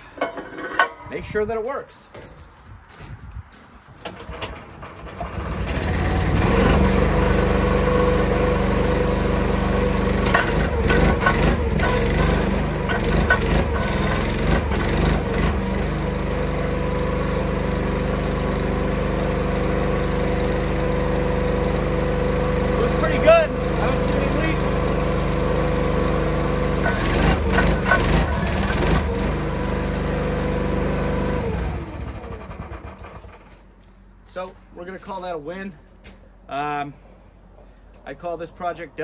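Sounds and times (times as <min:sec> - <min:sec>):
metal clanks and knocks: 0:00.0 - 0:01.1
small gasoline engine running: 0:04.6 - 0:33.6.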